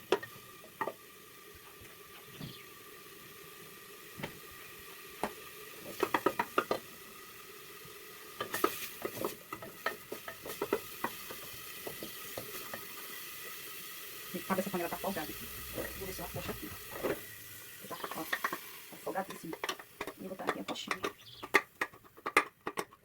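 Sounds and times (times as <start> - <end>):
food sizzling in oil: 0.0 - 22.0
wooden spoon knocking pot: 5.2 - 6.9, 8.4 - 12.9, 17.8 - 23.0.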